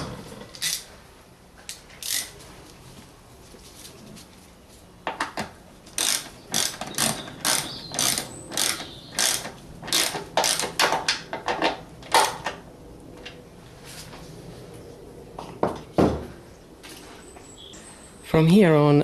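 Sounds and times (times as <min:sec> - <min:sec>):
socket ratchet clicking: 0:06.0 - 0:10.8.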